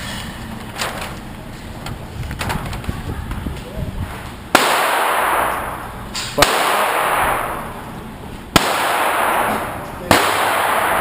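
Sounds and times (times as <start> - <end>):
pistol shots echoing: 4.5 - 11.0.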